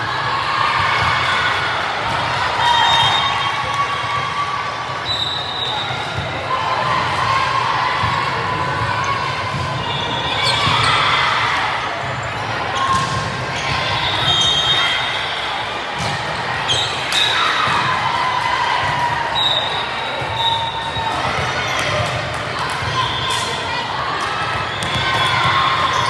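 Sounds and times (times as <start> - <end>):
spectators' voices: 0.0 - 26.0
sneaker squeaks on court floor: 24.5 - 26.0.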